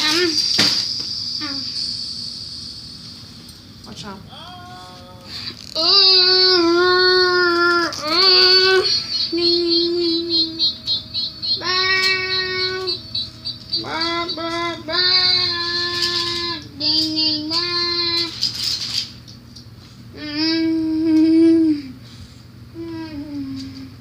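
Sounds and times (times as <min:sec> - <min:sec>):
child singing wordless tune: 0:05.8 - 0:18.4.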